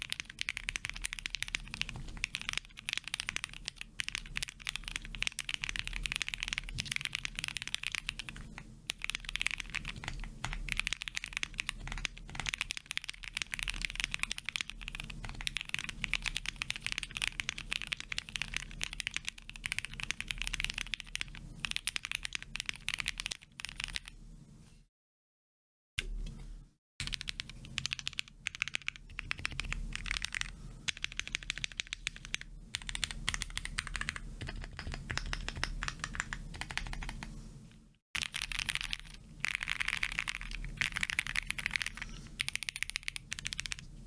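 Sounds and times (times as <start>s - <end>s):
mechanical keyboard typing: 0.0s - 24.1s, 27.0s - 37.3s, 38.2s - 43.9s.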